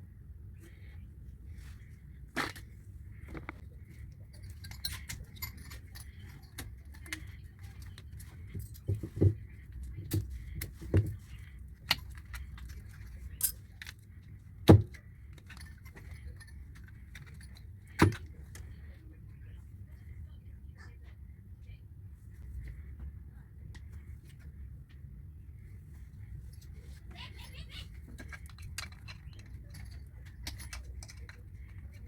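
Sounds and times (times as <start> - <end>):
low steady hum: 0.0 - 32.0
metallic clicks of tools handled: 4.3 - 8.8, 28.1 - 32.0.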